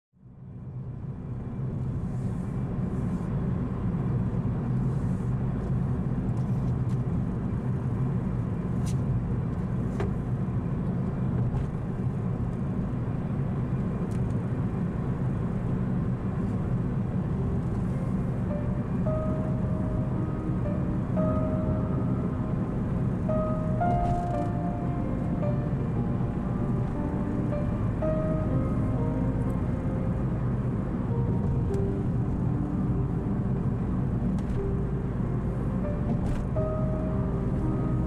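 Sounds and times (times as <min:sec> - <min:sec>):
low rumble: 0:00.2 - 0:38.0.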